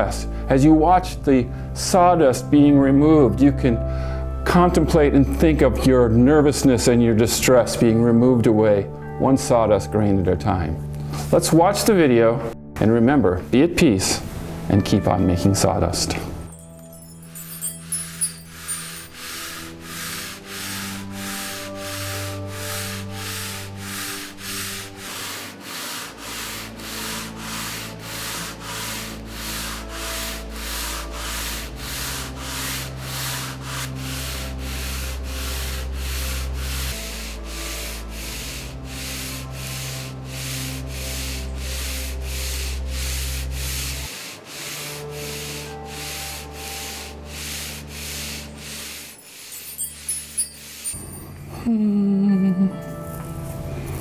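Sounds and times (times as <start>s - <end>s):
sandpaper rasping on wood: 16.4s - 51.0s.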